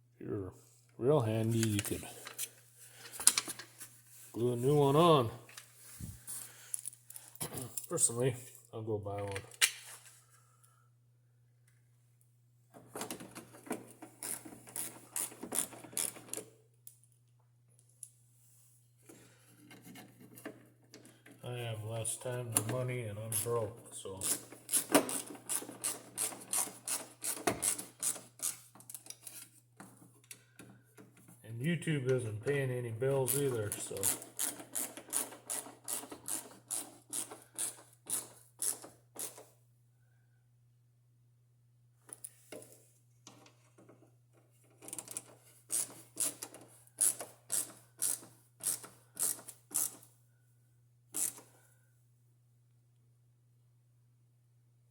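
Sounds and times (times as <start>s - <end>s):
small hard parts clicking and rattling: 23.3s - 31.4s, 33.3s - 39.5s, 44.6s - 50.1s, 51.1s - 51.5s.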